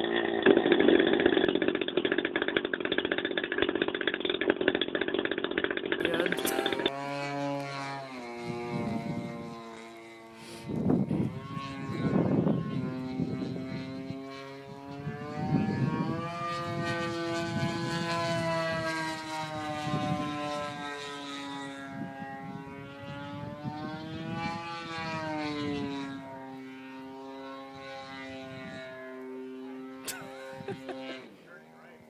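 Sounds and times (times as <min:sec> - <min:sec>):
model plane engine and propeller: 0:00.0 - 0:32.0
wind buffeting microphone: 0:08.3 - 0:26.4, 0:27.5 - 0:29.0, 0:30.2 - 0:31.3.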